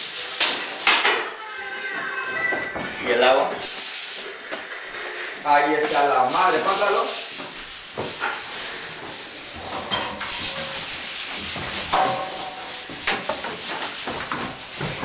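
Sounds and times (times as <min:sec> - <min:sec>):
rough scraping on hard surface: 0:04.9 - 0:15.0.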